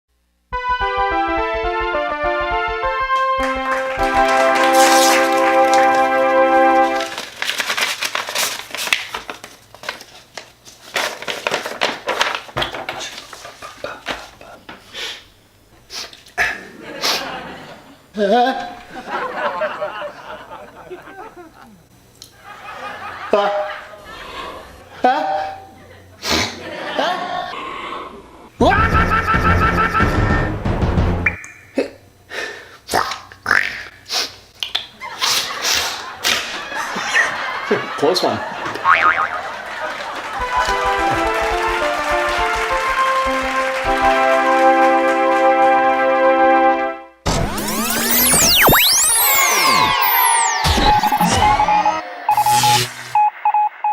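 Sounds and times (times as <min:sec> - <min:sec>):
paper rustling and crinkling: 0:04.2 - 0:14.4.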